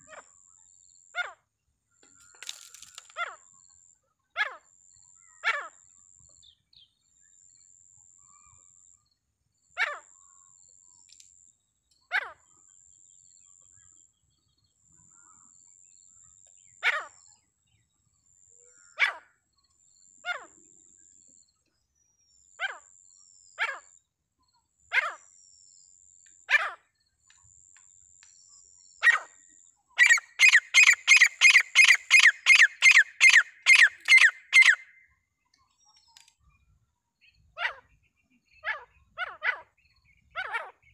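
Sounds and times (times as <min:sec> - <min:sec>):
francolin calling: 0:30.0 - 0:35.0.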